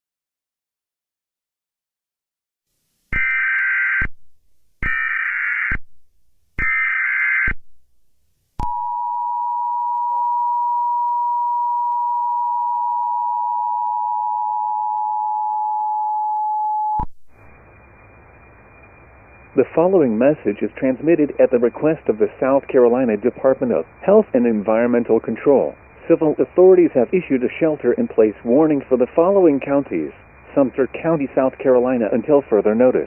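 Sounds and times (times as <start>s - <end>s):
data signal bursts: 3.1s - 4.1s, 6.6s - 7.6s
two-tone attention signal: 8.6s - 17.1s.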